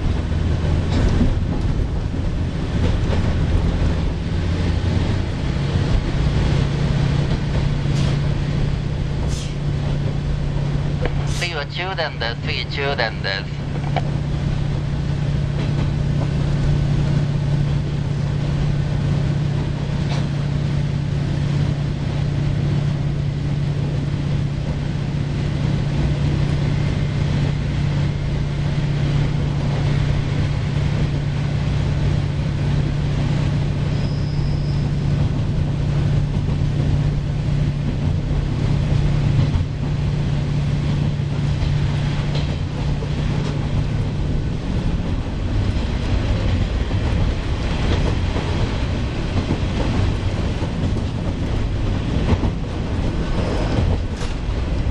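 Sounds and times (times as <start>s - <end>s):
diesel engine drone: 0.0s - 33.8s
train wheels on rails: 0.0s - 54.9s.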